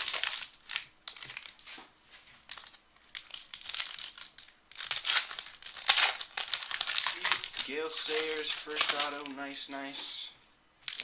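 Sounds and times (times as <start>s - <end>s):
wrappers crinkling and rustling: 0.0s - 10.1s.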